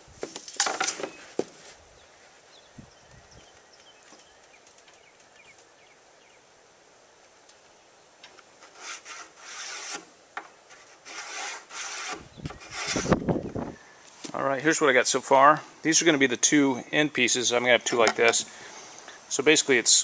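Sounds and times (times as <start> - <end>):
wood being rasped: 8.6 - 10.1, 10.7 - 13.2.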